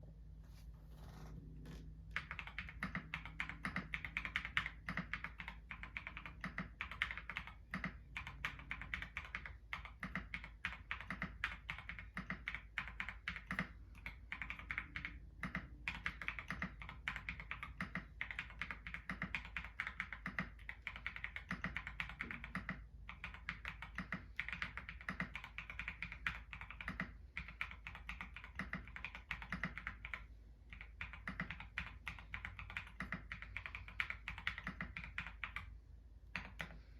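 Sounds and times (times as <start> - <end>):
fast mechanical keyboard typing: 2.1 - 36.9.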